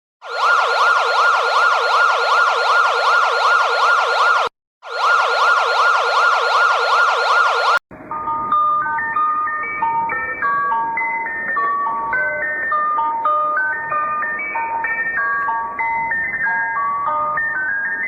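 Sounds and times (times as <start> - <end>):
electronic siren yelping: 0.2 - 7.8.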